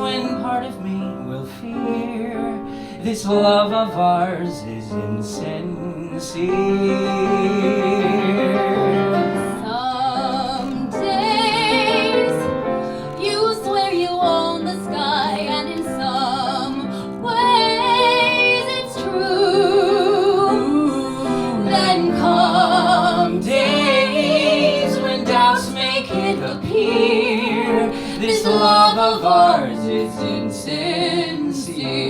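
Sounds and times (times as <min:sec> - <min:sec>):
instrumental accompaniment: 0:03.8 - 0:32.0
woman singing with vibrato: 0:09.5 - 0:29.7.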